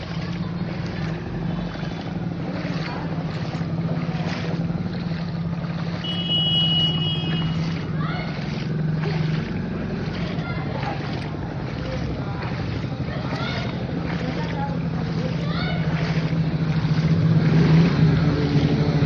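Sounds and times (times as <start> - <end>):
motor engine running: 0.0 - 19.0
brief high-pitched tone: 6.0 - 7.7.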